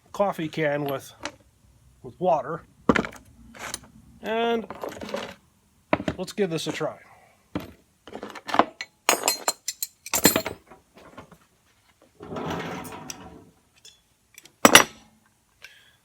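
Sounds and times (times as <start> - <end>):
metal tools clattering: 8.8 - 10.7, 14.6 - 14.9.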